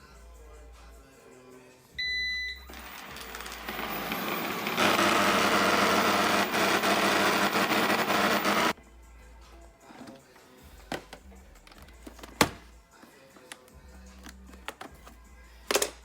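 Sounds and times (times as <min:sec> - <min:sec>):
robot vacuum beep: 0:02.0 - 0:08.7
robot vacuum running with rattle: 0:02.8 - 0:08.7.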